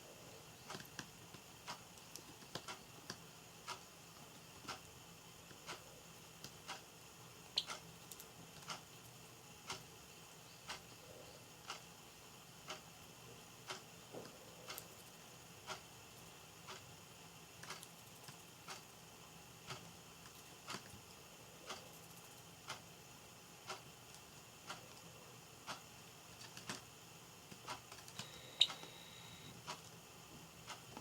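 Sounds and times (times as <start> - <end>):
faint irregular clicks: 0.5 - 6.9, 7.6 - 11.0, 11.6 - 11.9, 12.6 - 12.9, 13.6 - 15.9, 16.6 - 16.9, 17.6 - 18.9, 19.7 - 22.9, 23.6 - 26.9, 27.5 - 30.0, 30.6 - 31.0
clock ticking: 1.6 - 6.9, 7.6 - 9.0, 9.6 - 10.0, 10.6 - 11.0, 11.6 - 11.9, 12.6 - 12.9, 13.6 - 15.9, 16.6 - 17.0, 17.6 - 18.9, 19.6 - 20.9, 21.6 - 22.9, 23.6 - 26.8, 27.5 - 30.0, 30.6 - 31.0.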